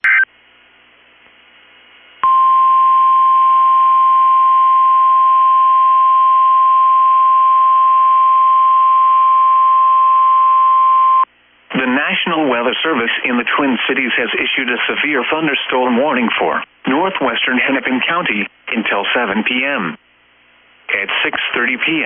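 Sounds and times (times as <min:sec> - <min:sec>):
faint radio hiss: 0:11.4 - 0:22.0.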